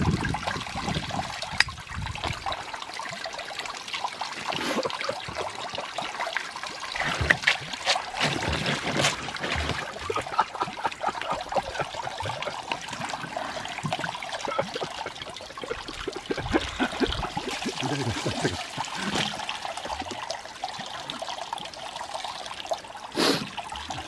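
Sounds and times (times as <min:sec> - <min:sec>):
water running from a hose: 0:00.0 - 0:24.0
sharp water splashes: 0:06.0 - 0:20.2.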